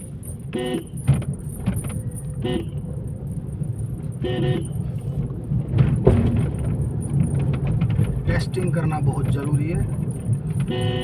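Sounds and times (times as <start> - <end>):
road and tyre rumble: 0.0 - 11.0
car horn toot: 0.5 - 1.1, 2.4 - 2.9, 4.2 - 4.9, 10.6 - 11.0
car bump: 5.6 - 8.6.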